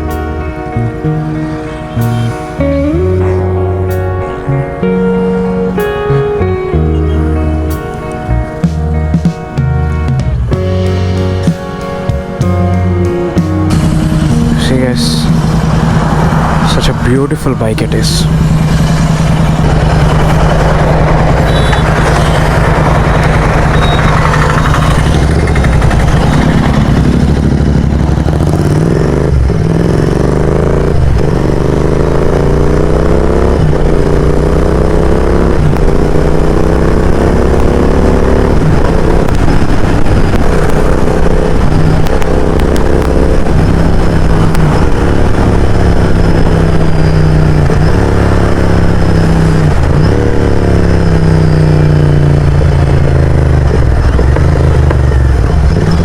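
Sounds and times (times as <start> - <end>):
motorcycle engine idling and revving: 0.0 - 56.0.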